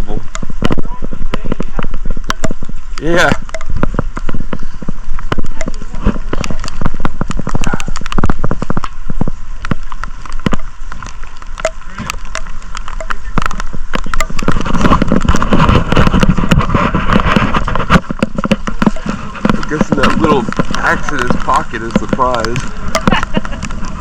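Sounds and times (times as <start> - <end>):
rain tapping near microphone: 0.0 - 24.0
background voices: 18.4 - 24.0.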